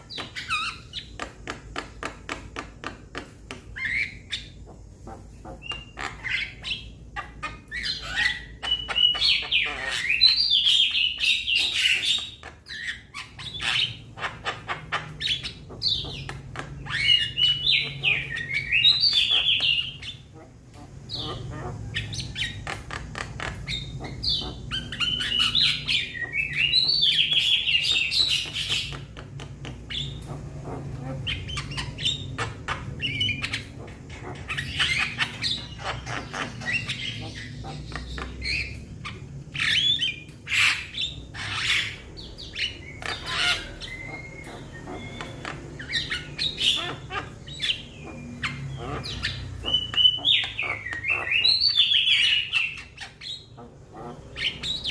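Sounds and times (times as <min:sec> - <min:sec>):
myna chattering calls: 0:02.8 - 0:54.9
sharp bird clicks: 0:22.5 - 0:30.4.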